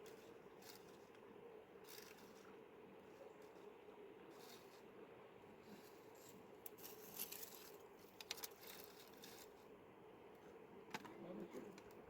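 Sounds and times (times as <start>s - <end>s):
faint steady hum: 0.0s - 12.0s
rustles and clicks of handling: 5.6s - 9.7s.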